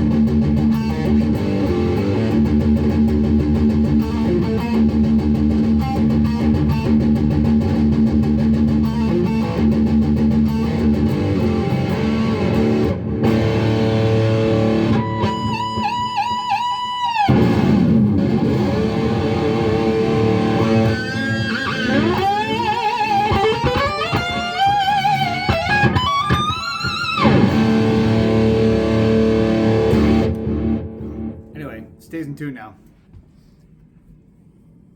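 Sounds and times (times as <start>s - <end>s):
electric guitar riffing: 0.0s - 32.3s.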